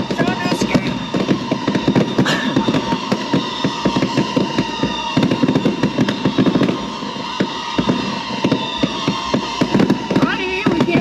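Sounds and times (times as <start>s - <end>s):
fireworks crackling and banging: 0.0s - 11.0s.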